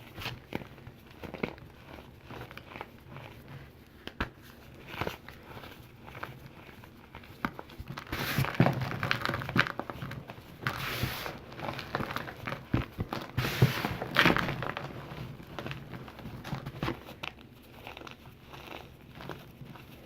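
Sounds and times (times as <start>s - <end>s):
chalk crunching and crackling: 0.0s - 20.0s.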